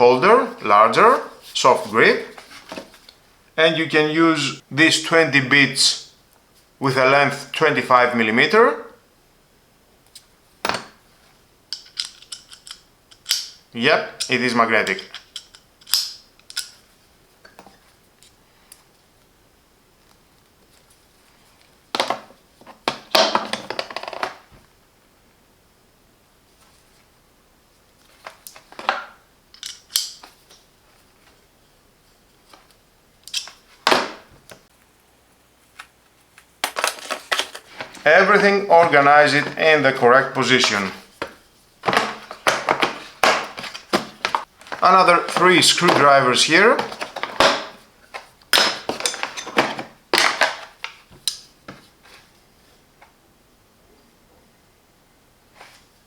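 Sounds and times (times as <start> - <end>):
tools clacking against plastic case: 48.6 - 50.7.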